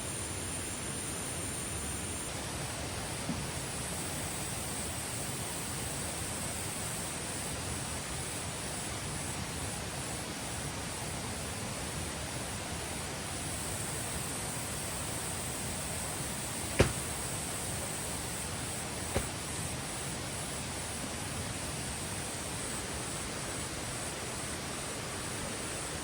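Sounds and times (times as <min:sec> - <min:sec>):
insects chirring: 0:00.0 - 0:26.0
stream rushing: 0:16.2 - 0:19.8.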